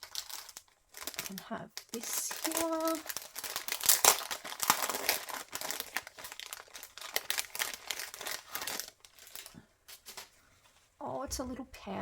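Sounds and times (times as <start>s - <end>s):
packaging crinkling and rustling: 0.0s - 10.9s.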